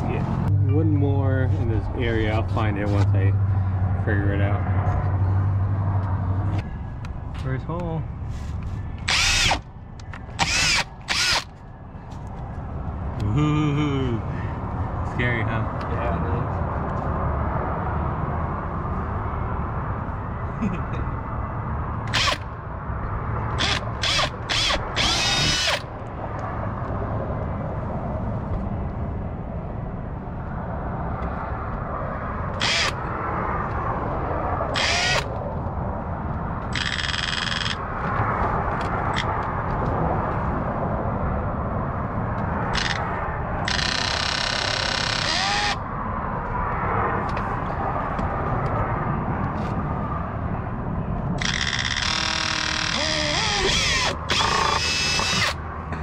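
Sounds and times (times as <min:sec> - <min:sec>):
power drill drilling plastic: 0:09.0 - 0:09.6, 0:10.4 - 0:11.5, 0:22.1 - 0:22.4, 0:23.6 - 0:25.8, 0:32.6 - 0:33.0, 0:34.8 - 0:35.2, 0:36.8 - 0:37.8, 0:42.8 - 0:43.0, 0:43.7 - 0:45.8, 0:51.4 - 0:55.6.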